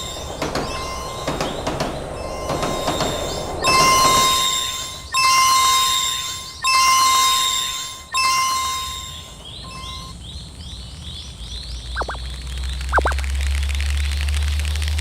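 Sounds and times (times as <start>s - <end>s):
bell-like warning chime: 0.0s - 10.2s
short rising chirps: 12.0s - 12.2s, 12.9s - 13.3s.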